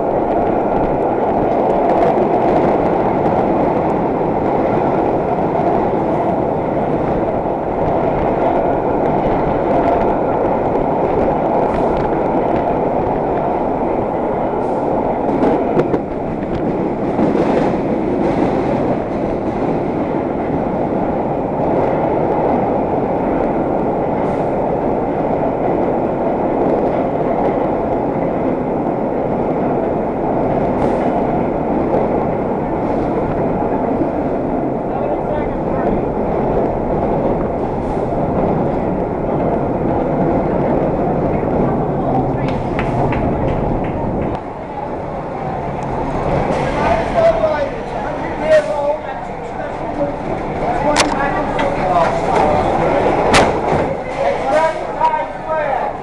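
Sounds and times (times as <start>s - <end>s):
subway wheels rumbling on rail: 0.0s - 56.0s
sharp clicks and knocks: 42.4s - 44.5s.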